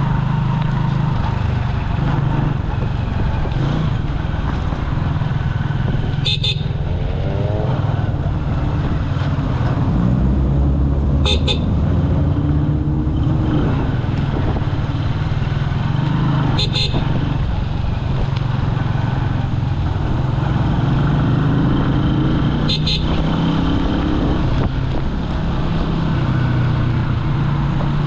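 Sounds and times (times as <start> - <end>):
motorcycle engine running: 0.0 - 10.0, 11.2 - 28.0
road and wind noise: 0.0 - 28.0
vehicle horn toots: 6.2 - 6.7, 11.2 - 11.8, 16.5 - 17.1, 22.6 - 23.2.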